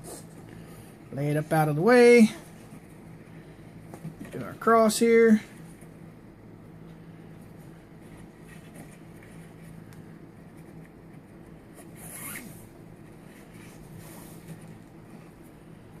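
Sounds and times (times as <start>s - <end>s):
faint steady hum: 0.0s - 16.0s
cord rubbing against itself: 7.5s - 15.6s
zip-like swish of cord: 11.9s - 12.7s.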